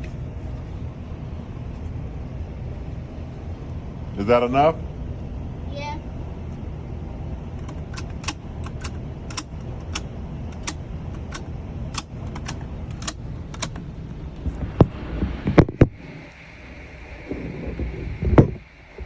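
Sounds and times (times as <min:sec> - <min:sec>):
cartridges clicking into magazine: 0:07.6 - 0:13.8.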